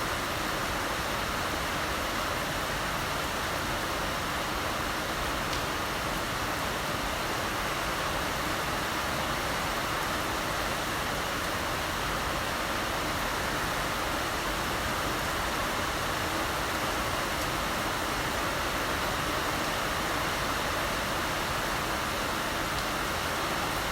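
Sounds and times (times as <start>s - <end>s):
heavy rain falling: 0.1s - 23.9s.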